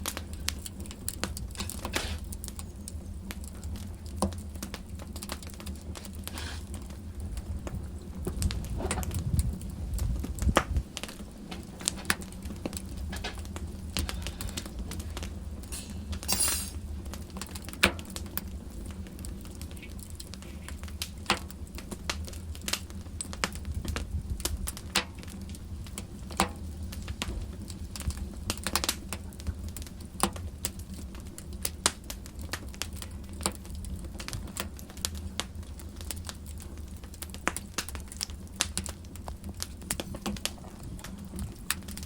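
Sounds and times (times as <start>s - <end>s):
low steady rumble: 0.0s - 42.0s
wood fire crackling and popping: 0.0s - 42.0s.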